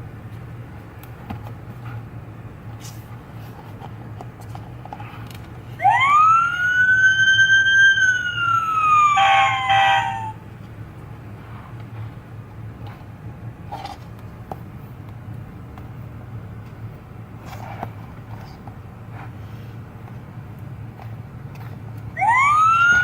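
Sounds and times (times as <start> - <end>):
siren wail: 5.8 - 10.4, 22.2 - 23.0.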